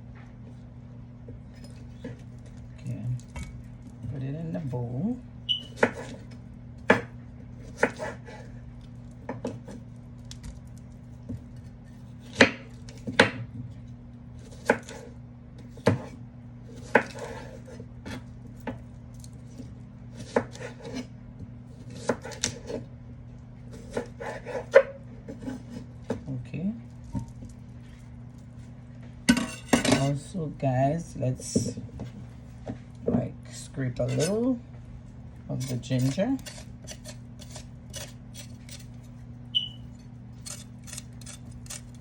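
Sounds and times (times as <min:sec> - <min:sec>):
knife chopping on cutting board: 0:05.7 - 0:06.2, 0:06.9 - 0:08.5, 0:12.2 - 0:13.5, 0:14.4 - 0:15.0, 0:15.7 - 0:16.2, 0:16.8 - 0:18.8, 0:20.2 - 0:21.1, 0:21.8 - 0:22.8, 0:23.7 - 0:26.2.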